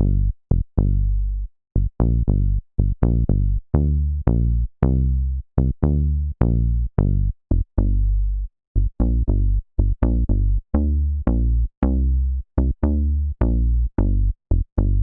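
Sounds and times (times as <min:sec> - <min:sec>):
synthesizer plucked bass notes: 0:00.0 - 0:15.0.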